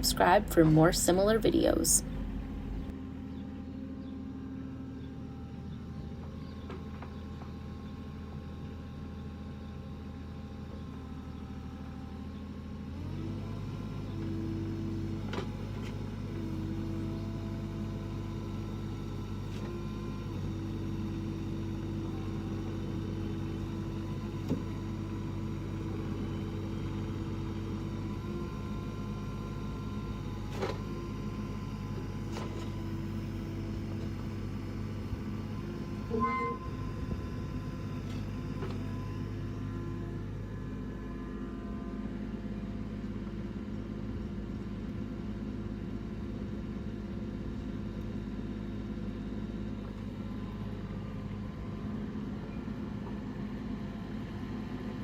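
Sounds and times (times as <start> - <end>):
excavator diesel engine running: 0.0 - 55.0
steady higher tone: 36.1 - 36.9.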